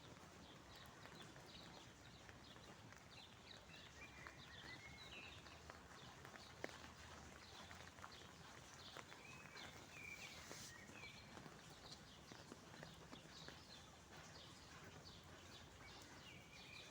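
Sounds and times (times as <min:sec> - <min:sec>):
faint birds chirping: 0:09.3 - 0:11.2
soft background hush: 0:09.7 - 0:10.8.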